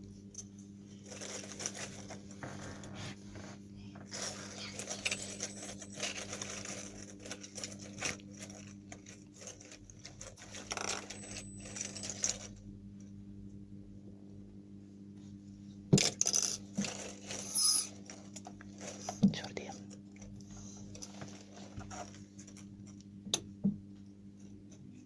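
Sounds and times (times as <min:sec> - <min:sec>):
low steady hum: 0:00.0 - 0:25.0
small objects clicking and rustling: 0:04.1 - 0:12.6.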